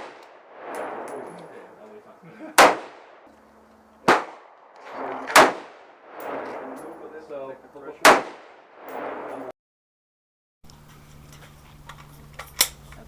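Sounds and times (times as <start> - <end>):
booms of gunfire: 0.0 - 1.6, 2.6 - 3.3, 4.0 - 7.2, 8.0 - 9.5
rifle shots: 0.0 - 1.6, 2.6 - 3.3, 4.0 - 7.2, 8.0 - 9.5.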